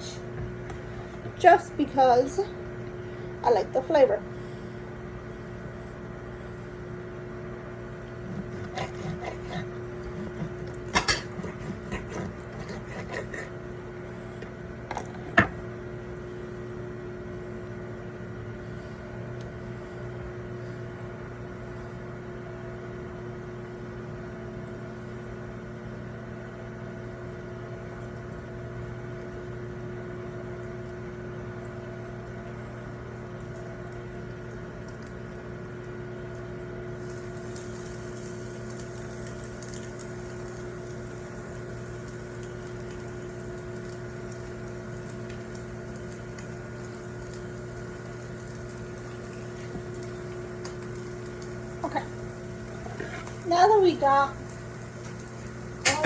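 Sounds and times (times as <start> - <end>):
mechanical hum: 0.0 - 56.0
fish and onions sizzling in pan: 37.0 - 56.0.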